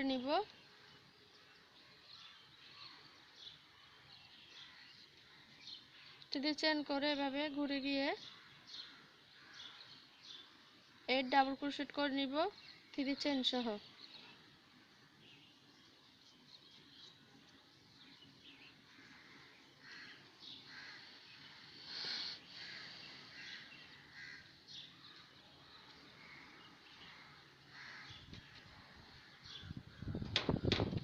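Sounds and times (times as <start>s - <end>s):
bird calls: 8.2s - 10.6s, 18.0s - 30.7s.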